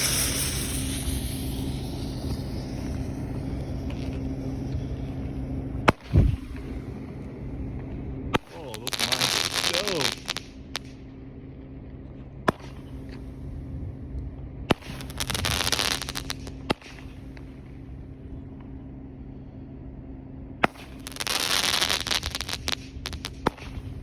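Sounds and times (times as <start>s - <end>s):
firework launch bangs: 0.0s - 4.6s, 5.8s - 6.8s, 14.7s - 17.4s, 20.6s - 24.0s
firework crackling: 0.0s - 7.4s, 8.4s - 11.0s, 12.5s - 13.6s, 14.7s - 17.8s, 20.6s - 24.0s.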